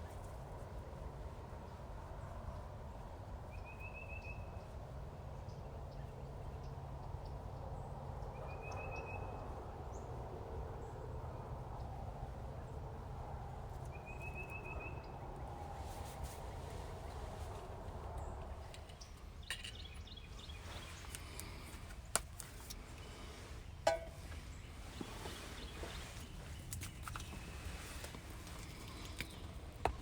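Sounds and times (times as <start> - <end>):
songbird trilling: 18.9 - 21.6.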